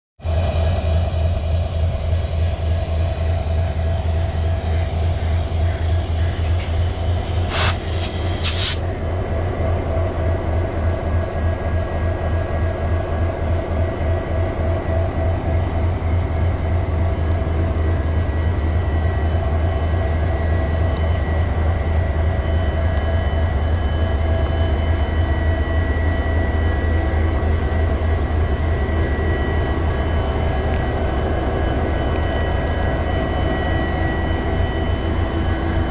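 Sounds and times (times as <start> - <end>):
locomotive diesel engine running: 0.3 - 9.1.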